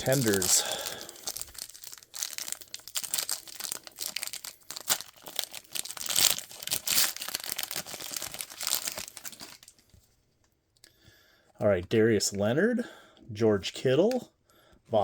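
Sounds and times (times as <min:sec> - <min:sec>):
wrapper tearing and crinkling: 0:00.0 - 0:09.9.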